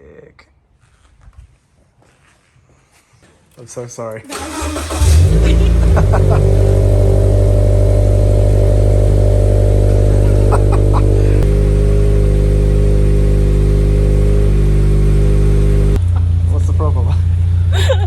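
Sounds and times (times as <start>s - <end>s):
car engine idling: 4.3s - 17.8s.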